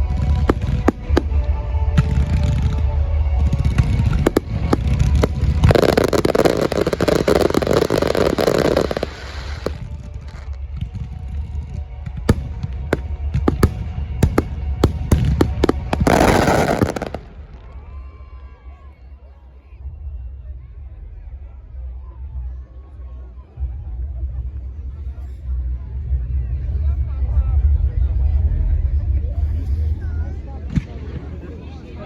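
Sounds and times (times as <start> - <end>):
fireworks bangs and crackling: 0.0 - 17.9
music soundtrack: 0.0 - 18.0.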